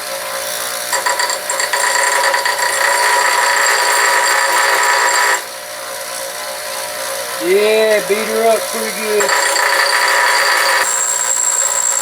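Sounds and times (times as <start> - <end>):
power tool grinding metal: 0.2 - 12.0.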